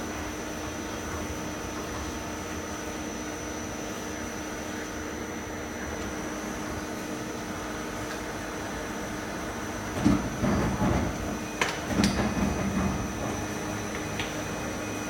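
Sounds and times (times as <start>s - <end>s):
machine humming and hissing: 0.0s - 15.0s.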